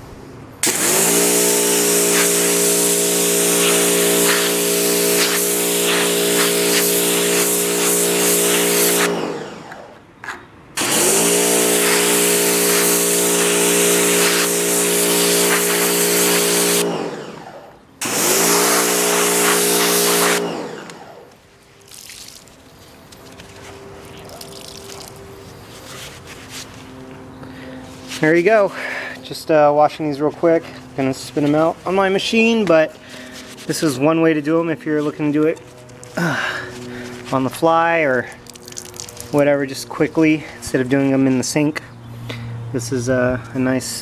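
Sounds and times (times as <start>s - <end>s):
spray hissing: 0.6s - 9.2s, 10.8s - 16.9s, 18.1s - 21.0s
pressure washer motor hum: 0.6s - 10.1s, 10.8s - 42.4s.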